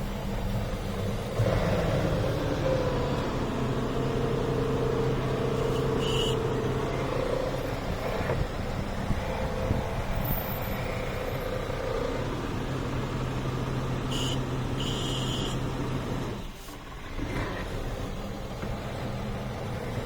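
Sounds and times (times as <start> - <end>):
engine idling rough: 0.0 - 20.0.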